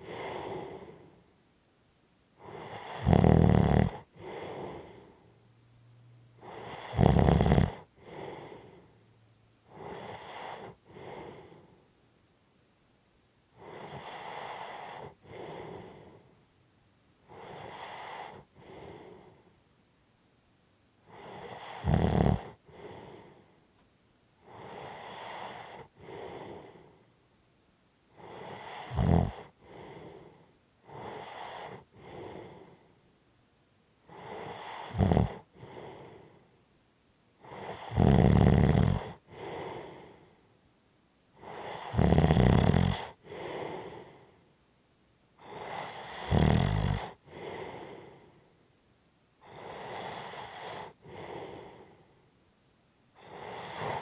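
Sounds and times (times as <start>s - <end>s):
person snoring heavily: 0.0s - 1.2s, 2.4s - 5.2s, 6.4s - 8.9s, 9.7s - 11.7s, 13.6s - 16.2s, 17.3s - 19.4s, 21.1s - 23.4s, 24.4s - 26.9s, 28.2s - 32.8s, 34.1s - 36.4s, 37.4s - 40.2s, 41.4s - 44.2s, 45.4s - 48.2s, 49.4s - 51.9s, 53.2s - 54.0s
soft breath out: 0.0s - 1.3s, 4.1s - 5.4s, 8.0s - 9.0s, 9.7s - 11.9s, 13.6s - 16.4s, 17.3s - 19.6s, 22.5s - 23.7s, 24.4s - 27.1s, 29.3s - 33.0s, 34.1s - 36.6s, 39.0s - 40.5s, 43.0s - 44.5s, 47.0s - 48.6s, 49.4s - 52.2s.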